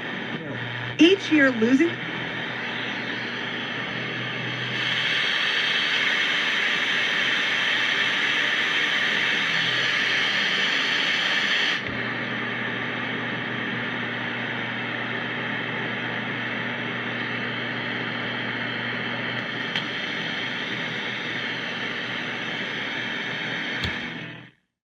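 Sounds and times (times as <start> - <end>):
radio static hiss: 0.0 - 12.0, 19.3 - 24.5.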